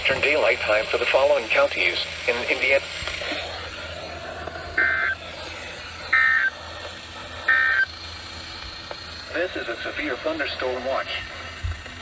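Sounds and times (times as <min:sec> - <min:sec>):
radio hiss: 0:00.0 - 0:12.0.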